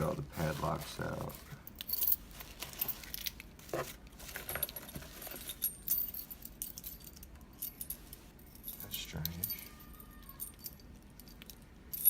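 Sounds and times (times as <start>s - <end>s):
metal padlocks and keys clinking: 1.6s - 3.6s, 4.4s - 12.0s.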